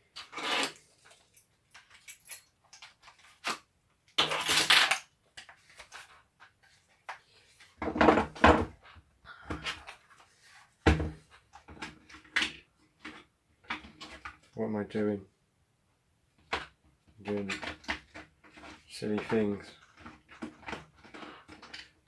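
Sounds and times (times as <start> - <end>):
clicks and rattles of parts: 0.1 - 7.2, 16.5 - 22.0.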